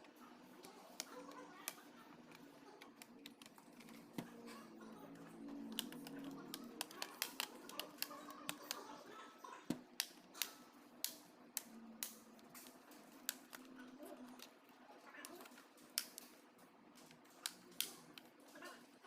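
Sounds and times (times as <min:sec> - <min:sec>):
laptop parts clicking and snapping: 0:00.6 - 0:04.3, 0:05.7 - 0:08.9, 0:09.7 - 0:13.7, 0:15.2 - 0:16.3, 0:17.0 - 0:18.3.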